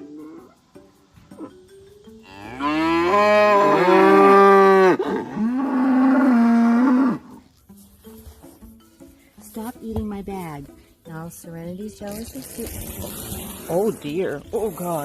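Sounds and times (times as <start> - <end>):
cow mooing: 2.2 - 7.4.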